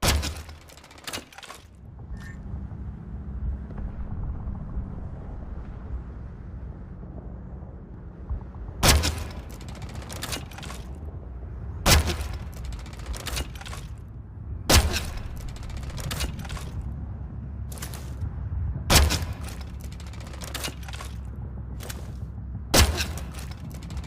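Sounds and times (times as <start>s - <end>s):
steady low rumble: 1.7s - 24.0s
crossbow shots: 14.7s - 16.8s, 22.8s - 23.6s.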